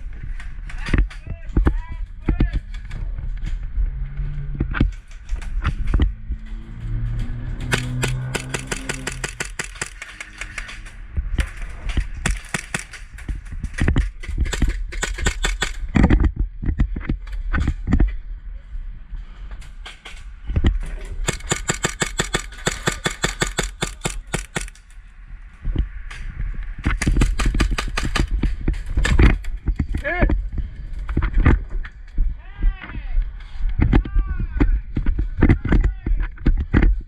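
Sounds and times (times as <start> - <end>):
airsoft guns firing bursts: 7.7 - 10.8, 12.2 - 16.0, 21.2 - 24.8, 27.0 - 28.3.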